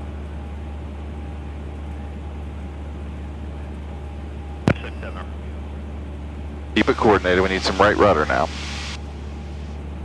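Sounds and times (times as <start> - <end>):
airplane engine droning: 3.5 - 10.0.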